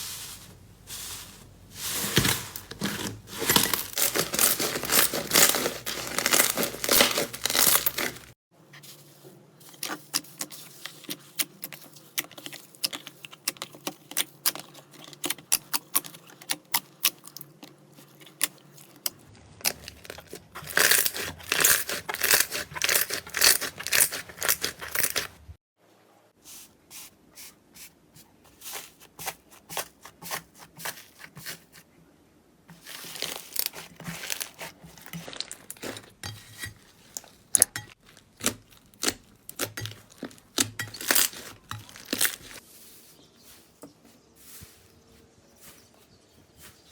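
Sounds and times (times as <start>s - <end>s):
slime crackling and popping: 3.9s - 8.4s, 19.4s - 25.3s, 33.0s - 36.1s, 37.0s - 42.6s.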